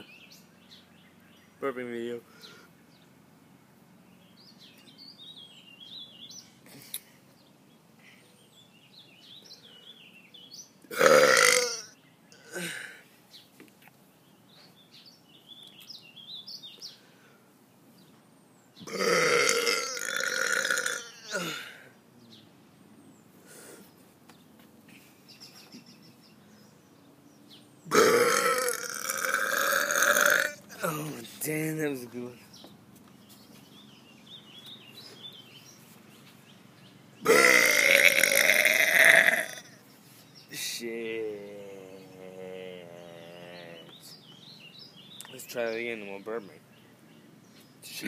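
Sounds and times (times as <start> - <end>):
faint bird song: 0.0 - 48.0
man burping: 10.9 - 13.0, 18.8 - 22.0, 27.9 - 31.1, 37.2 - 39.8, 41.3 - 43.8.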